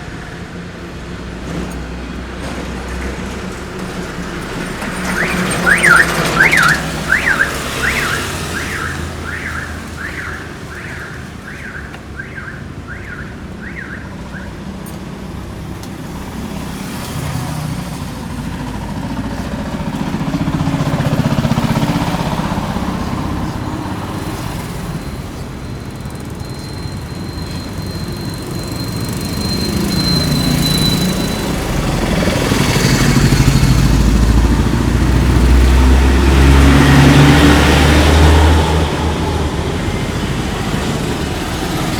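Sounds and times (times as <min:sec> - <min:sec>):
vehicles passing: 0:00.0 - 0:41.9
vehicle alarm chirp: 0:04.9 - 0:14.8, 0:24.2 - 0:33.5.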